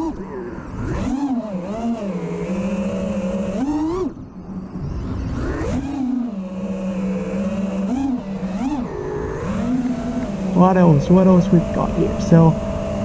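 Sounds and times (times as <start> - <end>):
quadcopter motors whining: 0.0 - 13.0
faint rush of air: 9.8 - 13.0.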